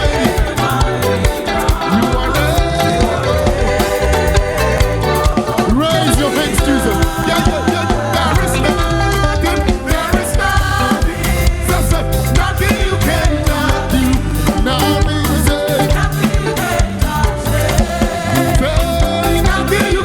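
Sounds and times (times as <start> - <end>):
band playing upbeat gospel music: 0.0 - 20.0.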